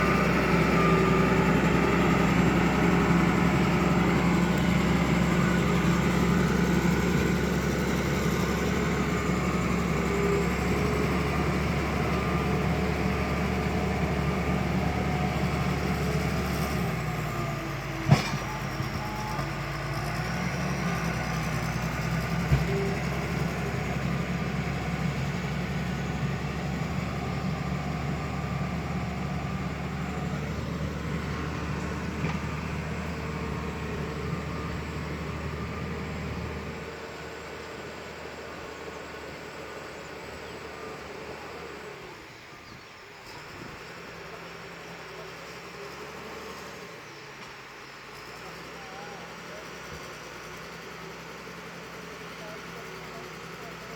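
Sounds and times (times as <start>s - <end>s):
diesel engine running: 0.0s - 53.9s
thump: 18.1s - 18.6s.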